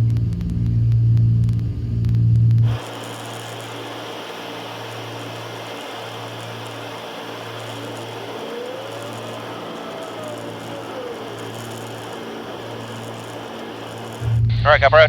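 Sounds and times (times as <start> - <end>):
aircraft engines droning in cabin: 2.6 - 14.4
faint rising and falling tone: 2.6 - 14.4.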